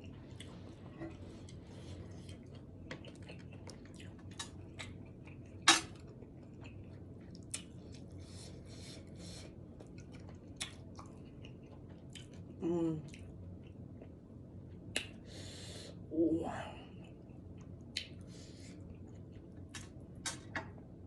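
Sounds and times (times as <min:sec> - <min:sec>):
wet chewing and lip smacks: 0:01.5 - 0:08.2, 0:09.8 - 0:14.2, 0:17.1 - 0:20.6.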